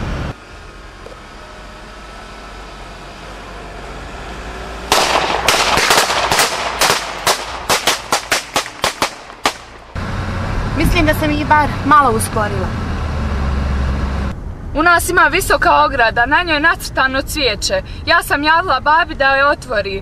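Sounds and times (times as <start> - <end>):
vehicle hum: 0.0 - 20.0
gunfire: 4.9 - 10.0
single gunshots: 4.9 - 10.0.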